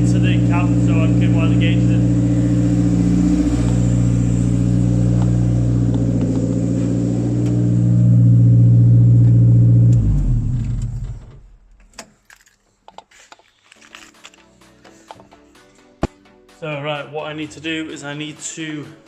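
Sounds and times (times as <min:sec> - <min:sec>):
car engine running: 0:00.0 - 0:11.5.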